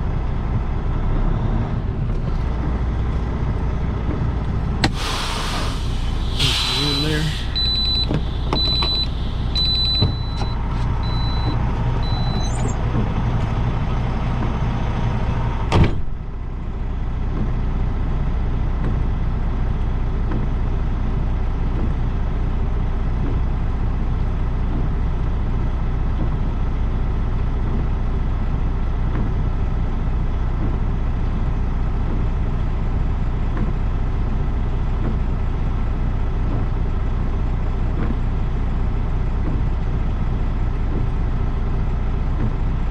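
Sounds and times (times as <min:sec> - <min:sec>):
diesel engine idling: 0:00.0 - 0:18.6
repeating high beep: 0:07.6 - 0:12.8.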